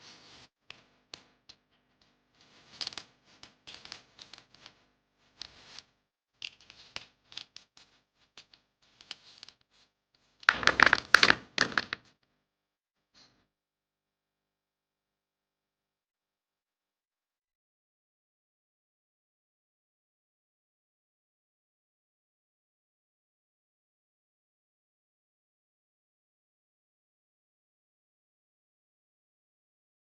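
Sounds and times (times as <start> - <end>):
hard taps and clicks: 10.4 - 12.1.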